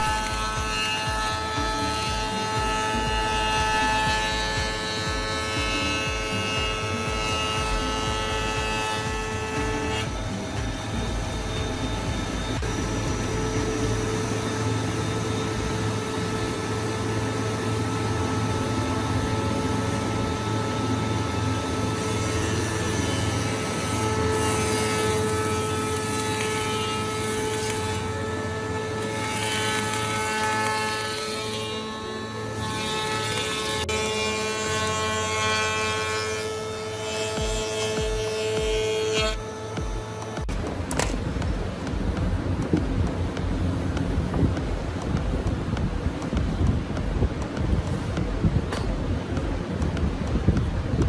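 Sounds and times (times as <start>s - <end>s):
woodworking machine whining: 0.0s - 51.0s.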